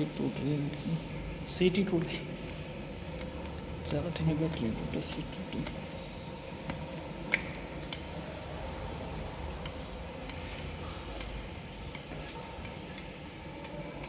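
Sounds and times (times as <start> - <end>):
low electrical hum: 0.0 - 14.0
faint clicks and taps: 2.5 - 6.0, 6.6 - 8.1, 9.5 - 14.0.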